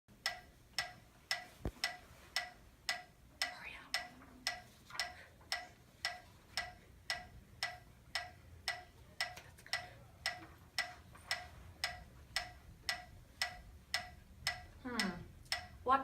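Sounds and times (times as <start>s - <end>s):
clock ticking: 0.1s - 16.0s.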